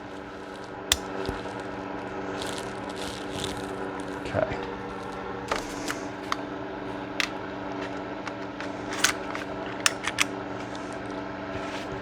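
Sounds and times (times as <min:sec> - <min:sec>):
space heater hum: 0:00.0 - 0:12.0
metallic clicks of pistol parts: 0:07.2 - 0:10.4.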